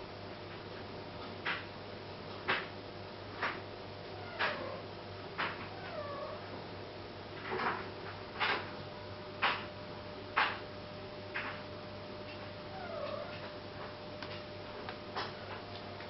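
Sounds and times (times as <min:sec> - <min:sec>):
kittens mewing: 0:12.7 - 0:13.5.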